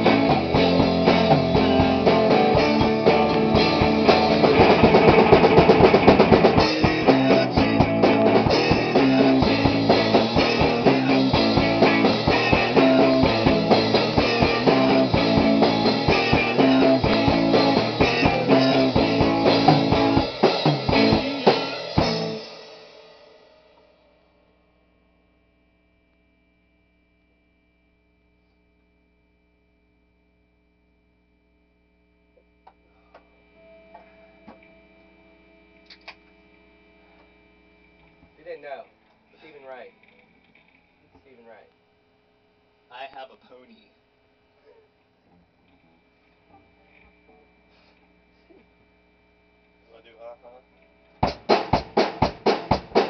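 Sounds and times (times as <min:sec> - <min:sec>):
rock band playing: 0:00.0 - 0:23.9, 0:51.2 - 0:53.0.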